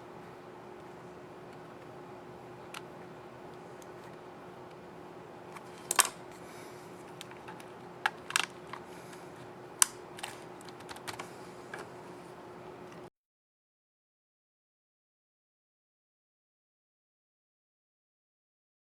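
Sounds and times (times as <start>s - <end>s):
faint steady hum: 0.0s - 13.1s
laptop keys clicking: 5.5s - 12.0s.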